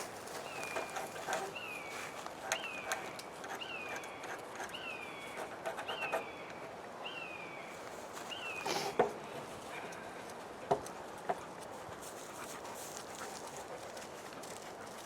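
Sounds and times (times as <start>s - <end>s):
faint taps and knocks: 10.6s - 11.4s.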